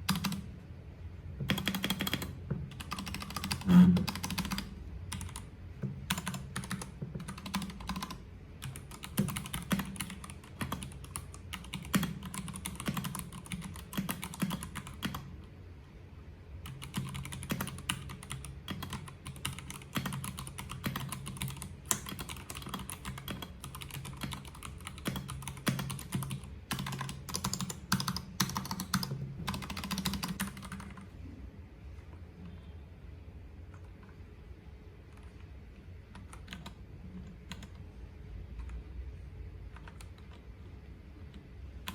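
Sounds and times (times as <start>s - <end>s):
typing on mechanical keyboard: 0.0s - 0.5s, 1.4s - 15.3s, 16.6s - 31.1s, 36.1s - 37.8s, 39.7s - 40.5s.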